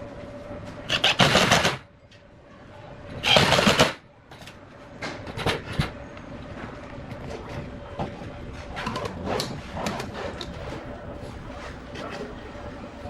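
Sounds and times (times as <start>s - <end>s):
faint steady hum: 0.0s - 13.0s
small drill running: 0.9s - 1.8s.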